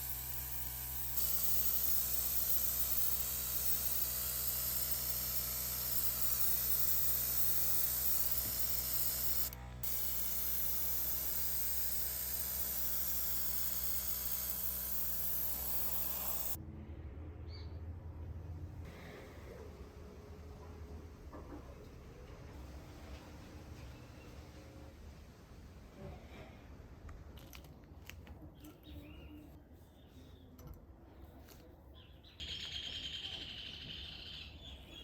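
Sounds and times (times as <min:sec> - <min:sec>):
small electric motor humming: 0:00.0 - 0:16.6.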